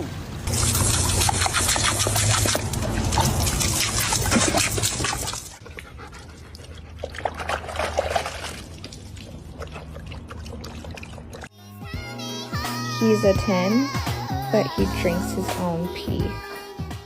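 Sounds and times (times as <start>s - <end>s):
dog panting: 5.6s - 7.1s.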